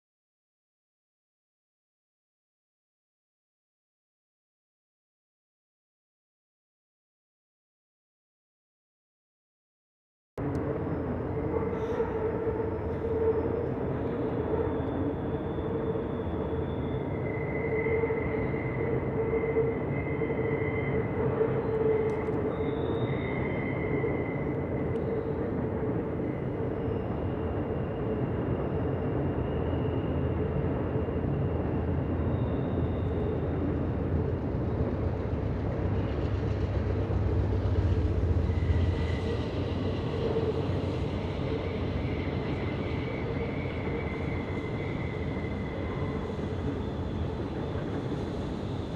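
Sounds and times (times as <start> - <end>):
train wheels rumbling on rail: 10.4 - 48.9.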